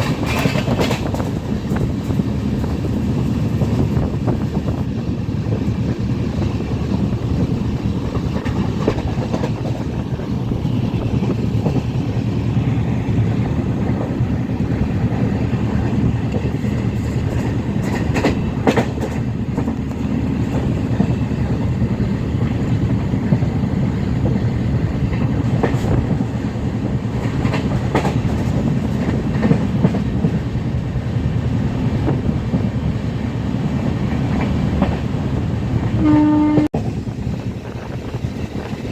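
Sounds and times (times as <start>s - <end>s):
wheels clicking over rail joints: 0.0s - 12.3s, 13.2s - 30.4s
train rumbling on rails: 0.0s - 38.9s.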